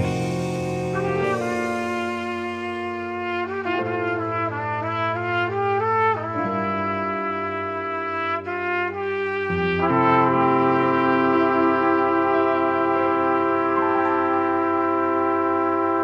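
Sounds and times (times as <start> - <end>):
low bass note: 0.0 - 3.6
trumpets playing in harmony: 0.0 - 16.0.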